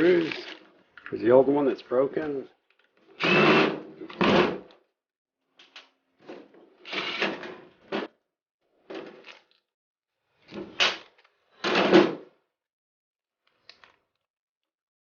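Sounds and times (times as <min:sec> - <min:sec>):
plastic parts clattering and scraping: 0:00.0 - 0:01.1.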